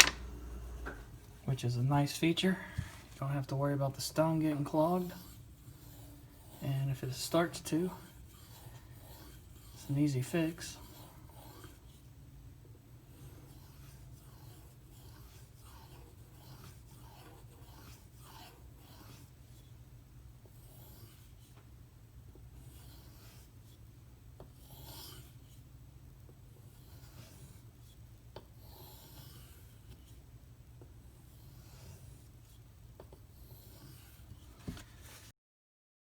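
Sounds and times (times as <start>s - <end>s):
knife rasping on whetstone: 4.6s - 12.0s, 13.3s - 19.4s, 24.5s - 25.4s, 28.6s - 29.9s.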